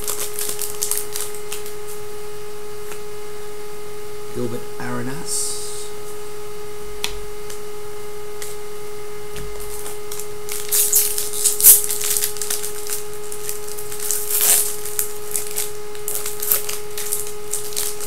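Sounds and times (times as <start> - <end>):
foil wrappers crinkling and tearing: 0.0 - 2.0, 9.5 - 18.0
steady hum: 0.0 - 18.0.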